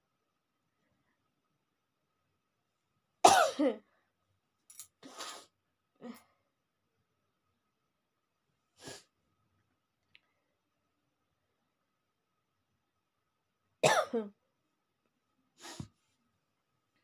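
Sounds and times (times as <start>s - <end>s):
person sneezing or coughing: 3.2s - 3.8s, 13.8s - 14.3s
person sniffing and breathing: 5.0s - 5.6s, 8.8s - 9.1s, 15.6s - 16.0s.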